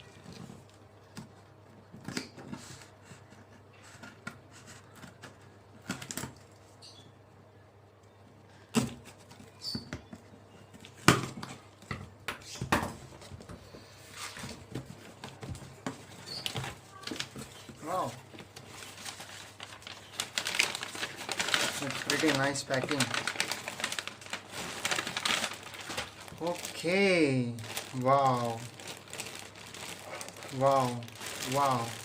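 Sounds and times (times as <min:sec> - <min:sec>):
packaging rustling and crackling: 0:14.0 - 0:32.0.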